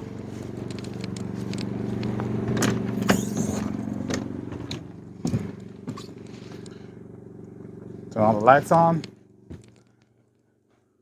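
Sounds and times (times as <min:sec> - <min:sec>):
generator running: 0:00.0 - 0:10.7.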